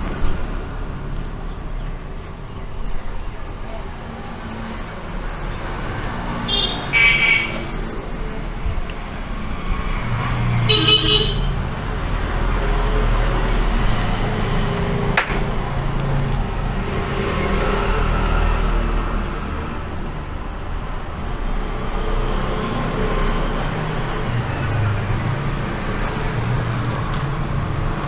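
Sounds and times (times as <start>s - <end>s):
road traffic rumbling: 0.0s - 28.0s
vehicle horn toots: 6.3s - 7.8s, 10.7s - 11.6s.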